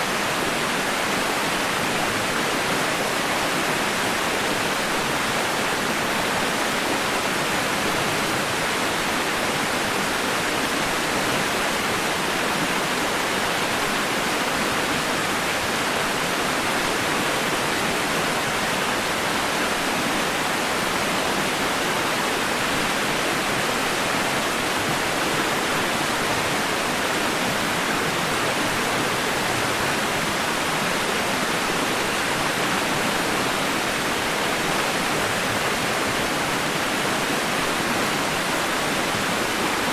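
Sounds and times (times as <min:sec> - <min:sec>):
white noise hiss: 0:00.0 - 0:39.9.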